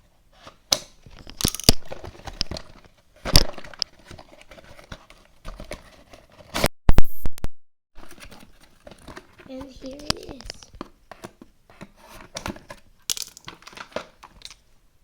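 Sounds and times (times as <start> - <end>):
plastic packaging handled: 0.5 - 6.6, 8.0 - 14.7.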